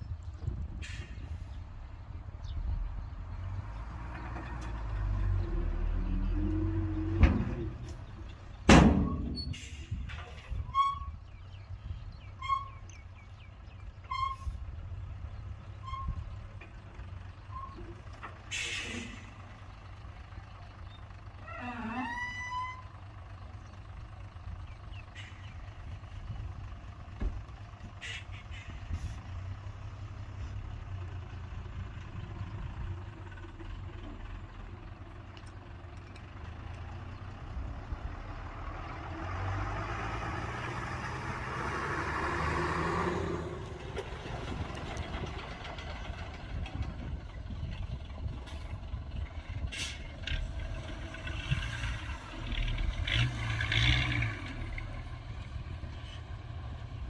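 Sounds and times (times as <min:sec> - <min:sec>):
diesel truck engine rumbling: 0:00.0 - 0:57.0
air brake hiss: 0:18.5 - 0:19.2, 0:28.0 - 0:29.2.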